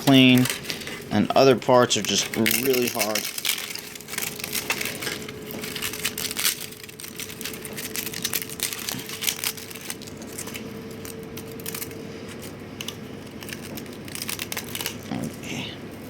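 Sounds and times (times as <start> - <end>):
plastic crackles clicks and snaps: 0.0 - 15.2.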